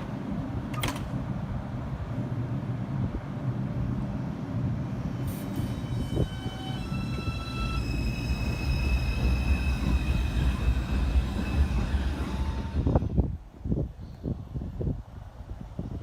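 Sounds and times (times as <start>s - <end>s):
subway train rumble: 0.0s - 16.0s
traction motors whining: 5.2s - 13.2s.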